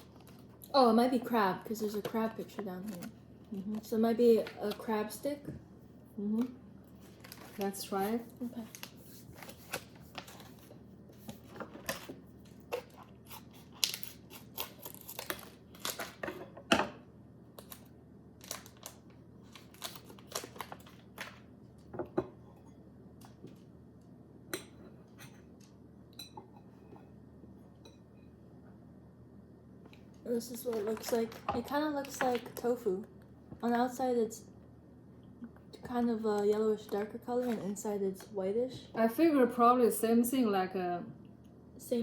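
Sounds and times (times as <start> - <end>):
plastic packaging crinkling and tearing: 7.0 - 10.7, 12.8 - 16.2, 17.6 - 21.4.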